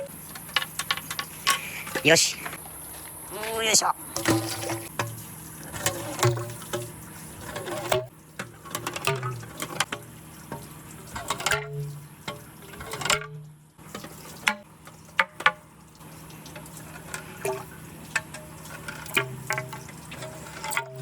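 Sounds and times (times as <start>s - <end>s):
water running down wooden gutter: 0.1s - 21.0s.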